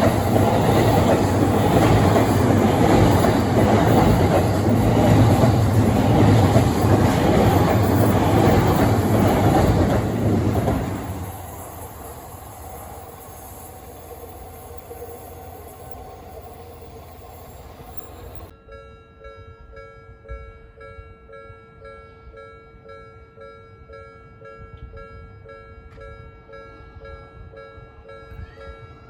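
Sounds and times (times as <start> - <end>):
train passing on tracks: 0.0 - 18.6
level crossing warning bell: 0.0 - 29.0.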